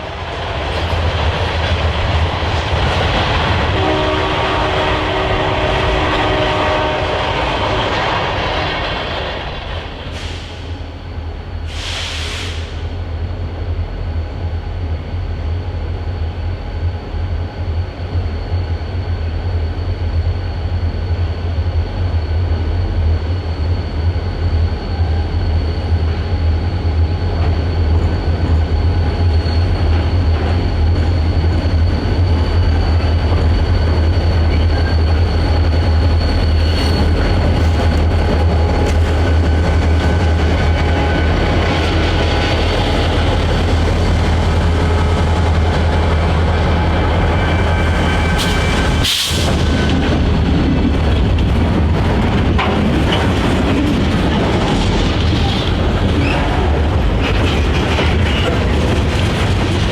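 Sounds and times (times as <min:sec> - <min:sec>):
steel wheels on rail: 0:00.0 - 0:59.9
train engine rumble: 0:00.0 - 0:59.9
thin steady squeal: 0:15.5 - 0:49.0.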